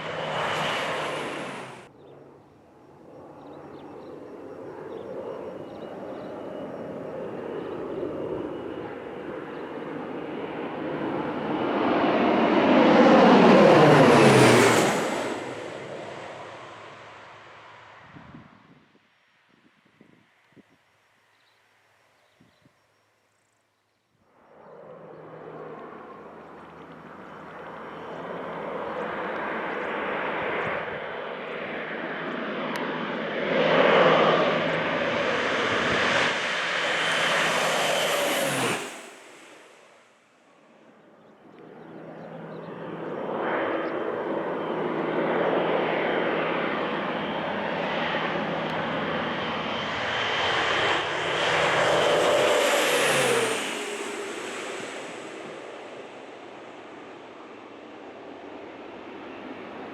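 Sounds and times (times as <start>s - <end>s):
propeller plane passing low: 0.0s - 21.6s, 23.8s - 59.9s.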